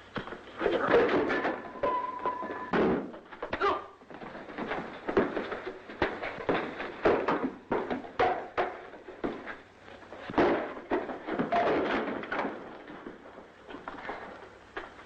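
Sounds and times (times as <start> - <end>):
rough scuffling: 0.1 - 15.0
irregular thumps and knocks: 0.2 - 9.7.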